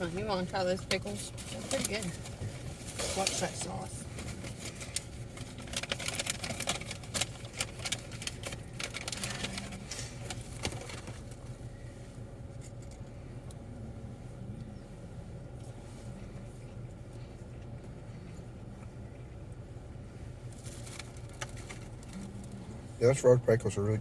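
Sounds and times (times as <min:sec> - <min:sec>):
food wrapper crinkling: 0:04.3 - 0:11.4.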